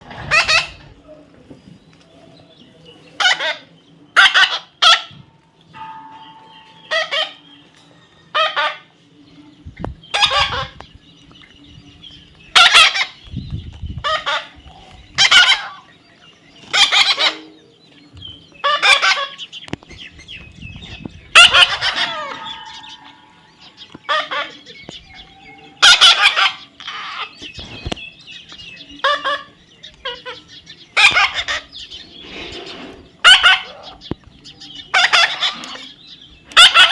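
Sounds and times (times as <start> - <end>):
parrot squawking: 3.2 - 5.2, 6.9 - 7.4, 8.3 - 8.9, 10.1 - 10.8, 12.5 - 13.2, 14.0 - 14.6, 15.2 - 15.8, 16.7 - 17.5, 18.6 - 19.4, 21.3 - 23.3, 24.0 - 24.8, 25.8 - 27.4, 31.0 - 31.9, 32.7 - 34.1, 34.9 - 35.9, 36.5 - 36.9.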